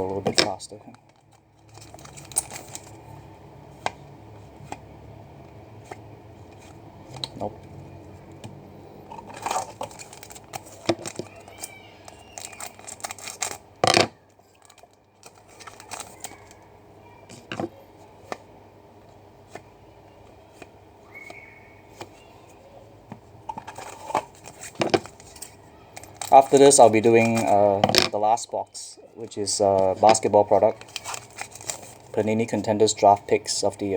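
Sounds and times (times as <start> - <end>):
cards clicking and rustling: 0.1 - 3.0, 8.3 - 16.7, 23.5 - 28.2, 29.7 - 33.1.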